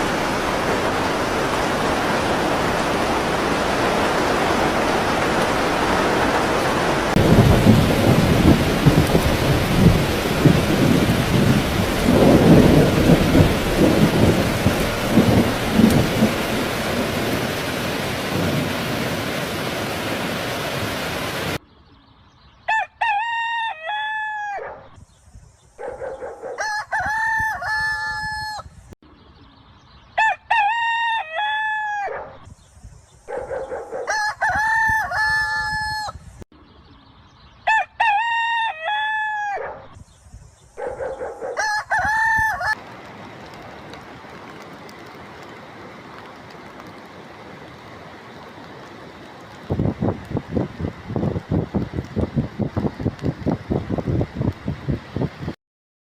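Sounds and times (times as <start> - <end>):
rumbling thunder: 0.0 - 19.5
heavy rain: 0.0 - 21.6, 42.6 - 55.6
rooster crowing: 22.7 - 24.8, 26.4 - 28.7, 30.2 - 32.3, 34.0 - 36.2, 37.7 - 39.8, 41.4 - 42.8.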